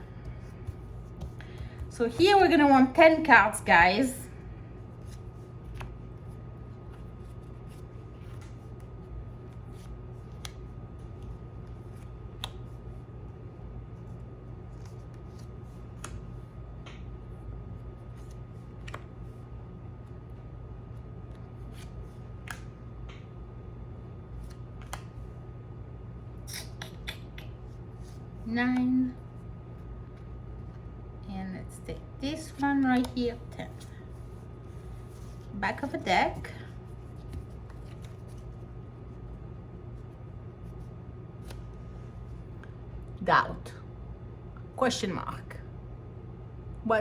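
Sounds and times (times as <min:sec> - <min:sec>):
cards clicking and snapping: 0:09.8 - 0:11.3, 0:11.9 - 0:12.8, 0:14.8 - 0:17.1, 0:21.3 - 0:23.3, 0:24.4 - 0:25.2.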